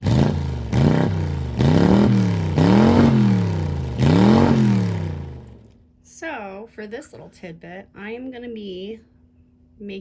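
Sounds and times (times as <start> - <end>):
car engine revving: 0.0 - 5.7.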